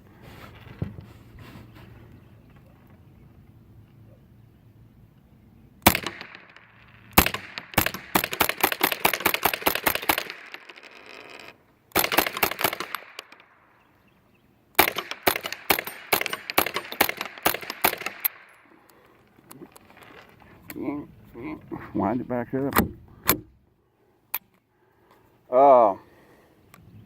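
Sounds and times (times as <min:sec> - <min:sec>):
rifle shots: 0:05.8 - 0:10.6, 0:11.9 - 0:13.6, 0:14.8 - 0:18.6.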